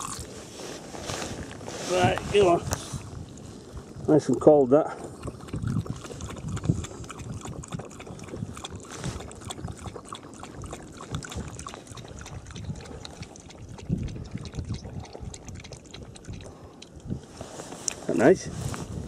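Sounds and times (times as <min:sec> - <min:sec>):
dog lapping water: 0:03.7 - 0:18.0.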